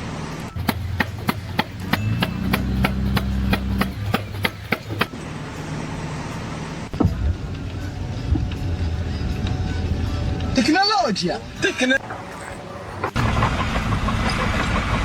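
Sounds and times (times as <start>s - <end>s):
low motor hum: 0.0s - 10.6s
rapid hammer-like knocks: 0.6s - 5.1s.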